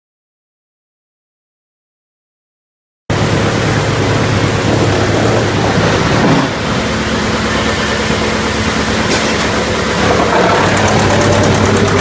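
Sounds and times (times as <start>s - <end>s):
wood chipper running: 3.1s - 12.0s.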